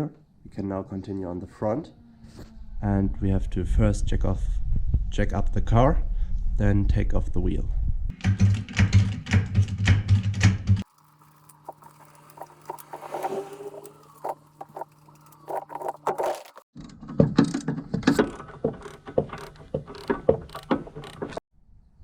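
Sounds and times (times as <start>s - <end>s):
metal tools clanking: 10.8s - 16.6s.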